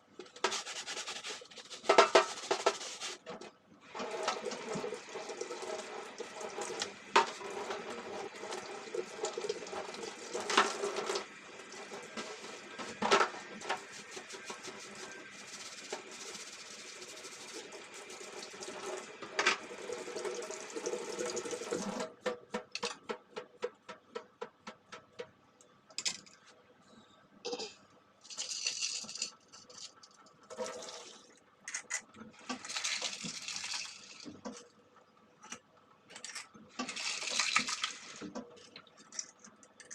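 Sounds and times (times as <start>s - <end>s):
tap water running into sink: 1.9s - 25.0s, 30.5s - 34.7s, 36.7s - 39.9s
short spurts of water: 30.4s - 31.4s, 32.3s - 34.8s, 36.7s - 39.5s.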